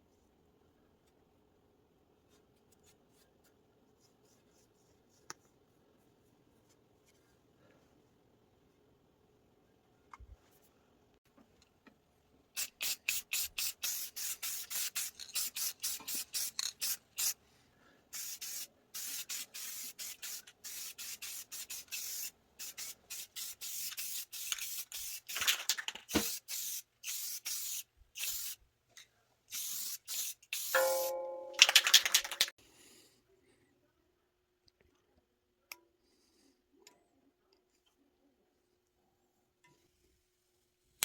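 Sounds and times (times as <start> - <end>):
spray paint can hissing: 12.6 - 17.4, 18.2 - 28.6, 29.5 - 32.4.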